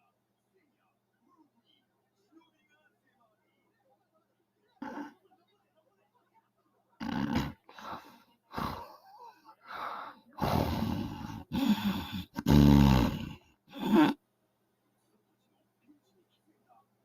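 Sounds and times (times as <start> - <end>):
woman snoring loudly: 7.0 - 8.9, 10.4 - 14.2.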